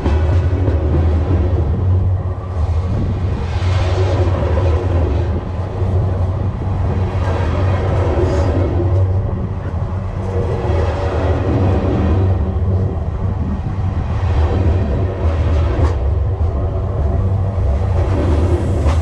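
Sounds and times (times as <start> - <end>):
freight train cars rolling past: 0.0 - 19.0.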